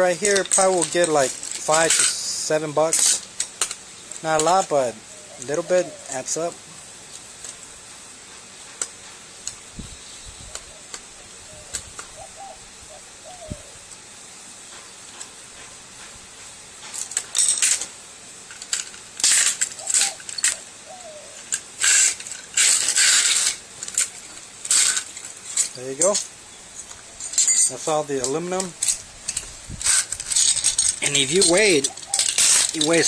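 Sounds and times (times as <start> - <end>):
metal clinking and scraping: 0.0 - 6.5, 14.7 - 20.6, 21.3 - 33.0.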